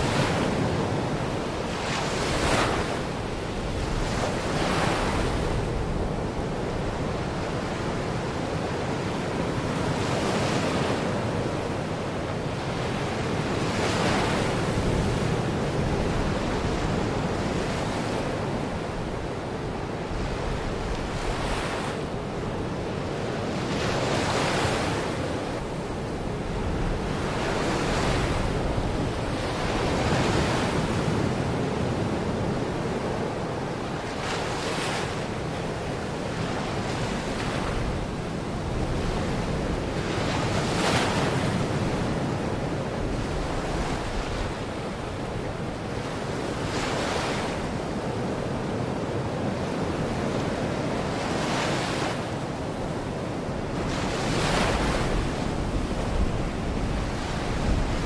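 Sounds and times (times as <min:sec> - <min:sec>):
waves breaking on shore: 0:00.0 - 0:11.3, 0:23.6 - 0:58.0
wind rumbling on microphone: 0:20.0 - 0:52.2, 0:52.8 - 0:58.0.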